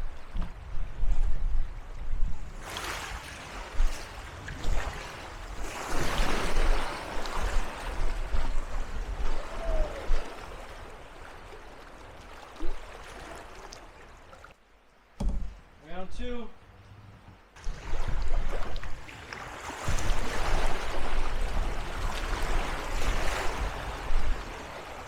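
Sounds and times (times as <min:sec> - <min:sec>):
water splashing: 0:02.6 - 0:14.6, 0:17.6 - 0:25.0.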